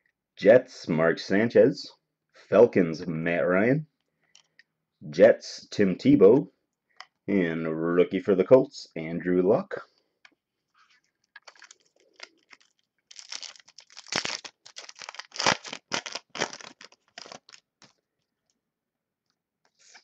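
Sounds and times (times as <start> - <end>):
foil wrapper crinkling and tearing: 11.3 - 18.0.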